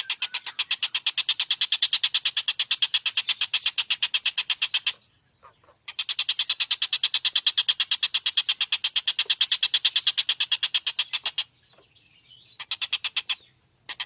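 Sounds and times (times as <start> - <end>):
kingfisher harsh rattling call: 12.6 - 14.0.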